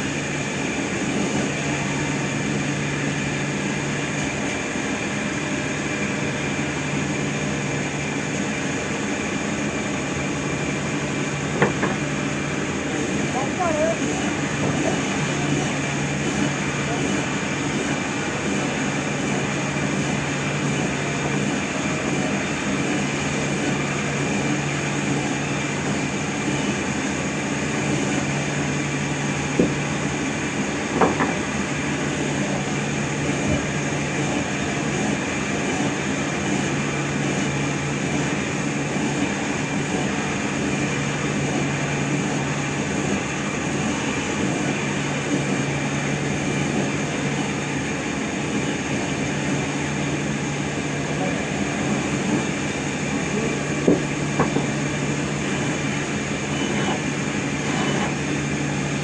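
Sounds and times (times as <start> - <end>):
machinery hum and whine: 0.0 - 59.0
short knocks: 30.9 - 31.5, 53.8 - 54.7.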